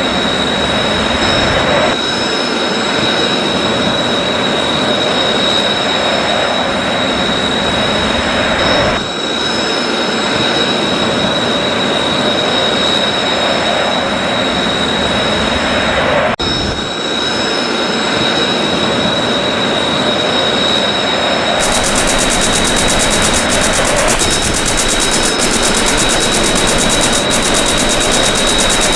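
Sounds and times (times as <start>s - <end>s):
jet engine roar with whine: 0.0s - 28.9s
rapid even ticking: 21.6s - 28.9s.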